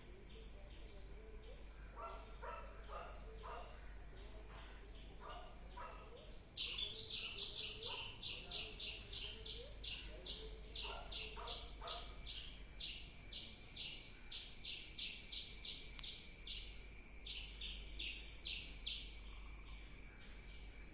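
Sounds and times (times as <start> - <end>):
squirrel chirping: 6.6 - 16.7.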